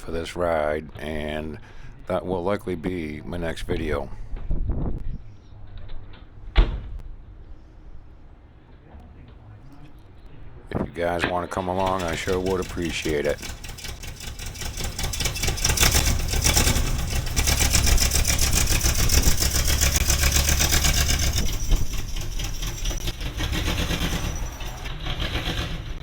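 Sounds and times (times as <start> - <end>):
motorhome engine running: 10.1 - 26.0.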